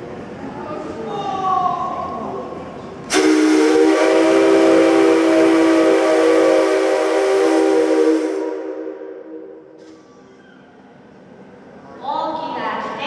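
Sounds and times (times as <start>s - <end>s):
steam locomotive whistle: 3.1s - 9.7s.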